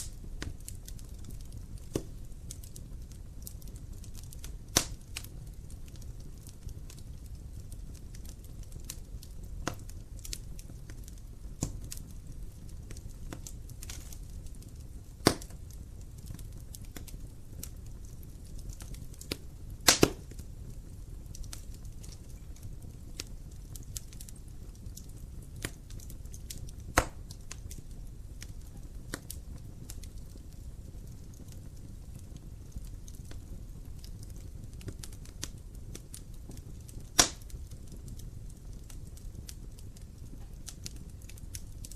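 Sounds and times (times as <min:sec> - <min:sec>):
fire crackling in a fireplace: 0:00.0 - 0:41.9
sharp fire pops: 0:00.0 - 0:41.9.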